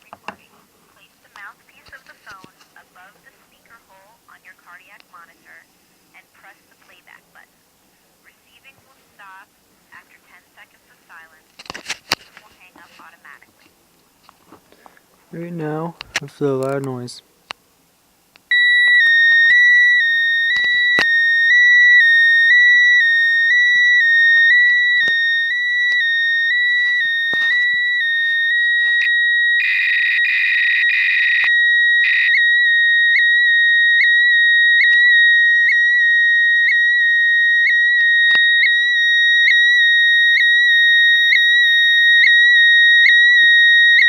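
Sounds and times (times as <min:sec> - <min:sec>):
high warbling tone from speaker: 0:18.5 - 0:44.0.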